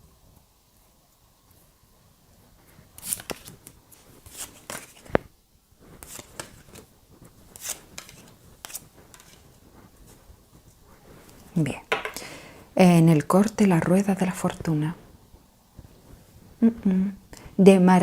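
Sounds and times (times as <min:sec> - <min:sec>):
cards being shuffled: 0:02.9 - 0:05.3, 0:05.9 - 0:12.3.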